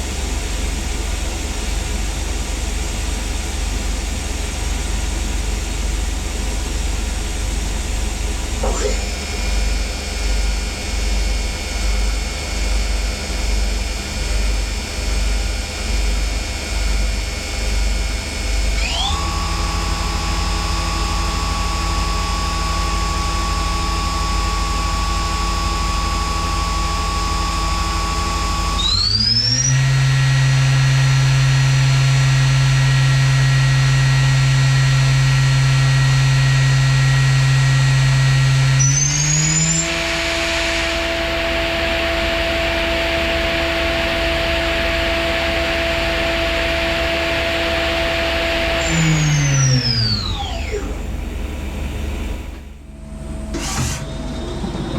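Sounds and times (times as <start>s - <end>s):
machine spindle whining: 8.5s - 9.5s, 18.8s - 30.5s, 36.9s - 54.9s.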